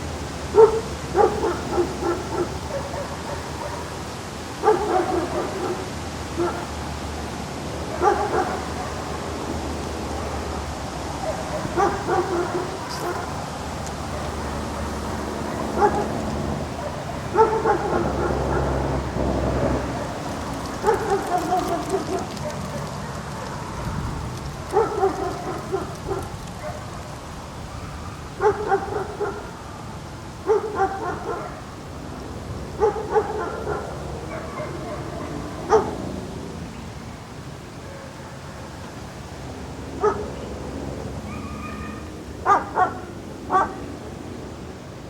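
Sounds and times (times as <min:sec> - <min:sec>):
steady background noise: 0:00.0 - 0:45.0
dog barking: 0:00.5 - 0:04.0, 0:04.6 - 0:06.8, 0:07.9 - 0:09.2, 0:11.2 - 0:13.4, 0:15.4 - 0:16.2, 0:16.8 - 0:18.8, 0:20.8 - 0:23.4, 0:24.7 - 0:26.9, 0:28.4 - 0:29.6, 0:30.4 - 0:31.7, 0:32.8 - 0:36.0, 0:40.0 - 0:40.3, 0:41.3 - 0:43.8.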